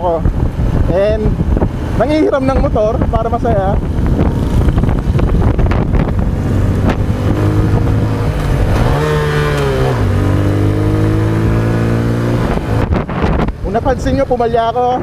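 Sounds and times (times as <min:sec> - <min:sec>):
motorcycle engine revving: 0:00.0 - 0:15.0
man speaking: 0:02.0 - 0:03.8, 0:13.6 - 0:15.0.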